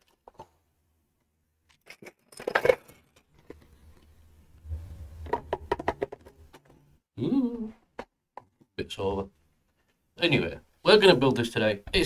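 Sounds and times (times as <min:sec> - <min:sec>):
plastic bricks clicking and clattering: 0:01.6 - 0:03.6.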